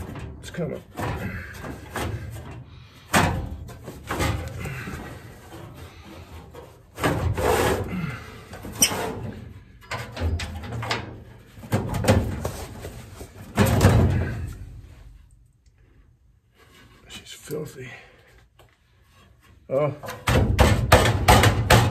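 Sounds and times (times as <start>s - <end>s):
metal scraping and knocking: 0.0s - 7.9s, 20.0s - 21.9s.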